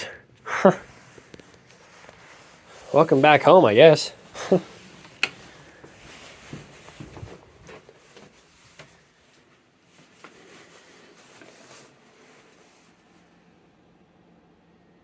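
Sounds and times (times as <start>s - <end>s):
light clicks and rustles: 4.7s - 13.0s.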